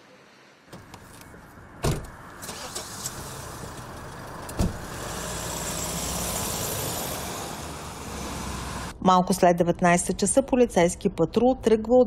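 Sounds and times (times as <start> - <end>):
car engine and road noise: 0.0 - 9.0.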